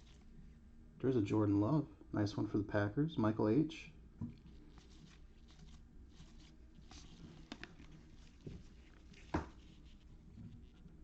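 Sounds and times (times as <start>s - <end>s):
trading cards rustling: 4.5s - 10.8s
cards tapping down: 7.0s - 9.6s.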